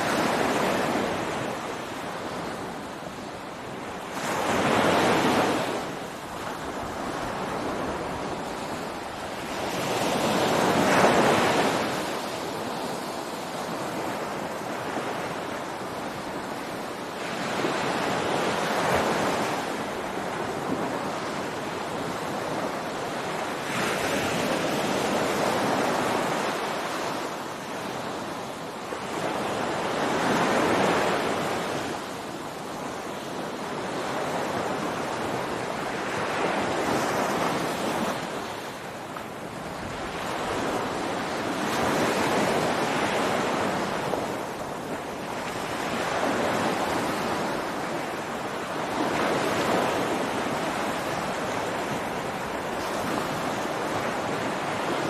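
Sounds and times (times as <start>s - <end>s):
ocean waves breaking on beach: 0.0s - 55.0s.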